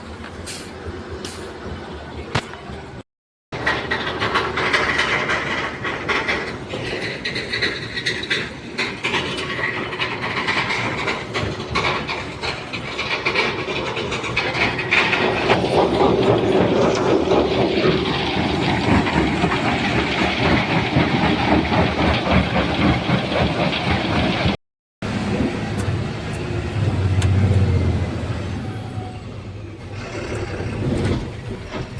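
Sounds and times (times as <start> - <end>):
stone-crushing machinery running: 14.8 - 25.3.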